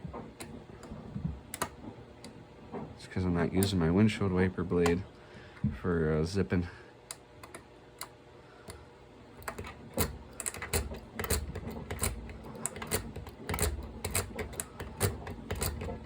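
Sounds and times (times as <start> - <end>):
lock pick raking padlock pins: 9.4 - 16.0.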